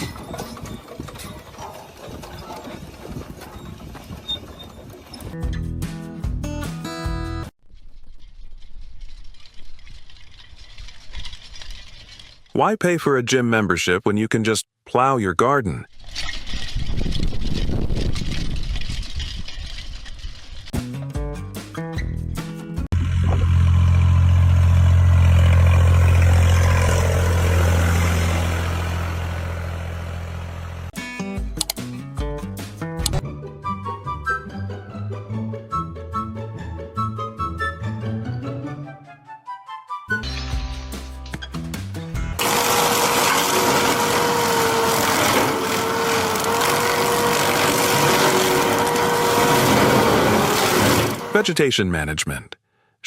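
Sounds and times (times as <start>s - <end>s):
engine running steadily: 22.9s - 31.0s, 42.3s - 51.4s.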